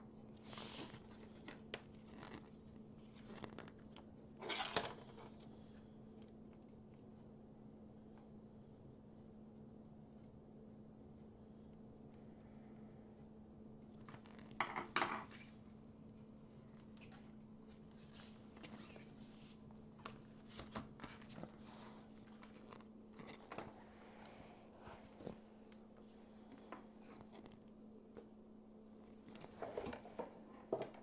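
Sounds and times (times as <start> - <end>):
steady low hum: 5.2 - 14.2.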